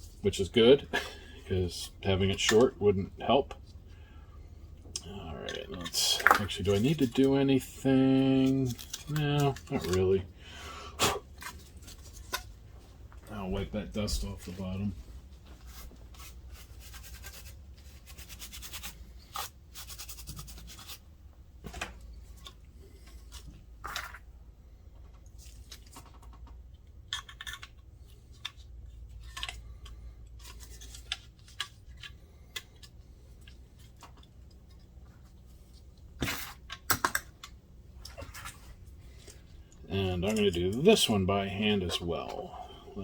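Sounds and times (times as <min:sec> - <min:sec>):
rubbing and scraping: 0:05.2 - 0:10.2, 0:13.4 - 0:21.1
plastic parts clicking and knocking: 0:25.0 - 0:35.2, 0:36.0 - 0:38.5.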